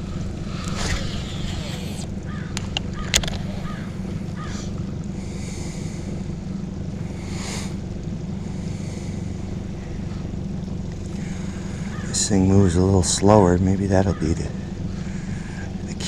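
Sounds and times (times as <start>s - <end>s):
boat motor humming: 0.0s - 16.0s
sharp clicks: 0.6s - 3.5s.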